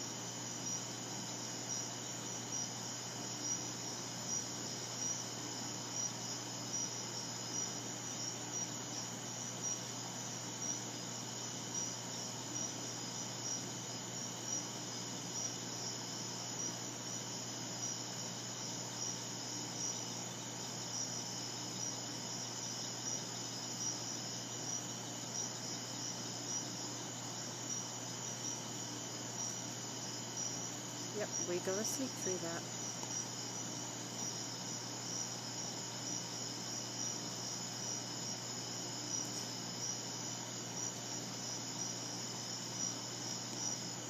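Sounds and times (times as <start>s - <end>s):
crickets chirping: 0.1s - 44.0s.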